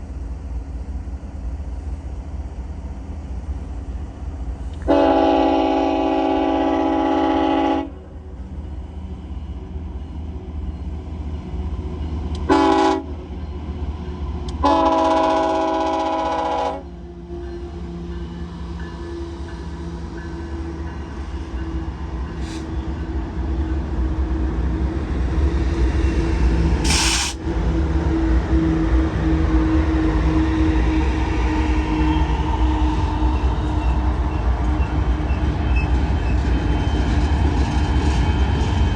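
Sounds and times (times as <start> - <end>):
locomotive engine drone and rumble: 0.0 - 38.9
locomotive air horn blasts: 4.9 - 8.0, 12.5 - 13.1, 14.6 - 16.9.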